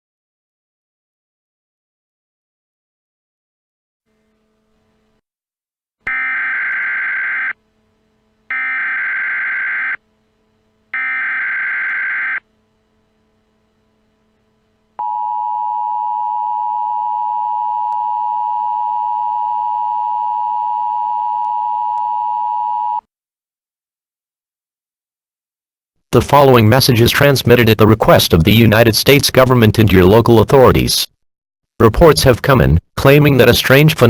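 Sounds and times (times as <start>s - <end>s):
harsh electronic data screech: 6.1s - 7.6s, 8.5s - 10.0s, 11.0s - 12.4s
two-tone attention signal: 6.1s - 7.6s, 8.5s - 10.0s, 11.0s - 12.4s.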